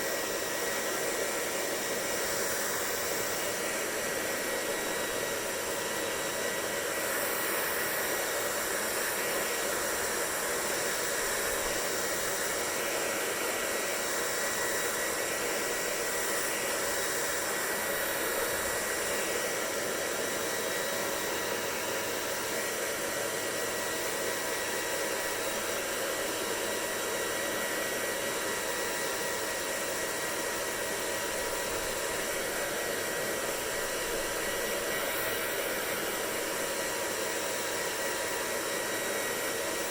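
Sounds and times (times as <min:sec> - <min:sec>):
hair dryer running: 0:00.0 - 0:39.9.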